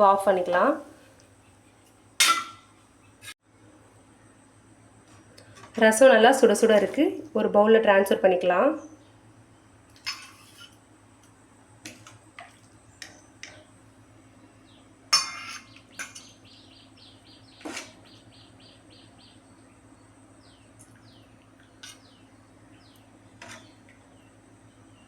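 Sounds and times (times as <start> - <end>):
utensils clinking against pot: 2.2 - 2.7, 15.2 - 16.3
bird chirping: 14.6 - 25.0.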